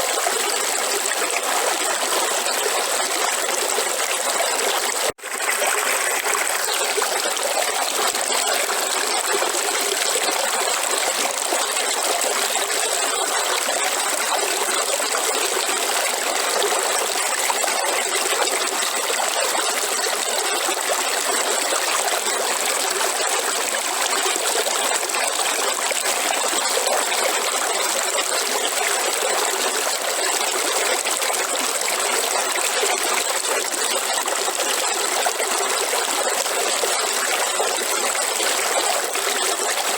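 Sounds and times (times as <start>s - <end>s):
river water flowing: 0.0s - 18.8s.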